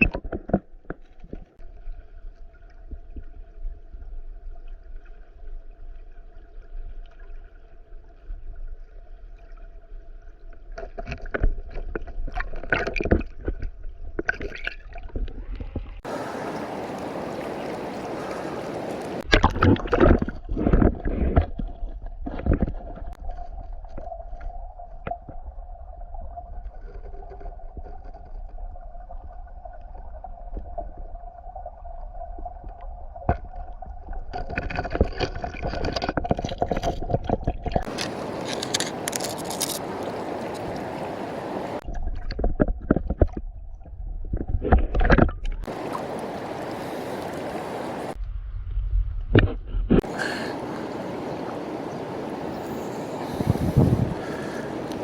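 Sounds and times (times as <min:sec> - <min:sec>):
water running in rocky stream: 0:00.0 - 0:48.2, 0:49.9 - 0:55.0
low rumble: 0:48.2 - 0:50.0.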